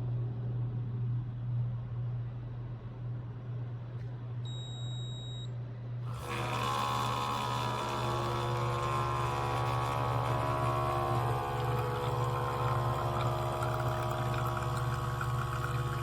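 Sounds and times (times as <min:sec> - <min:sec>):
electronic beep: 0:04.5 - 0:05.5
espresso machine pump running: 0:06.1 - 0:16.0
low hum: 0:07.2 - 0:16.0.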